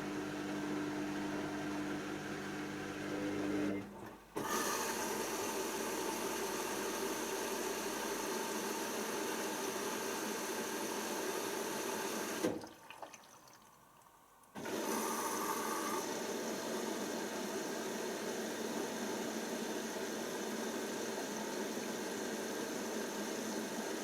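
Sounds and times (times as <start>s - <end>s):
washing machine running: 0.0s - 13.4s, 14.6s - 24.0s
water sloshing in drum: 12.4s - 14.2s.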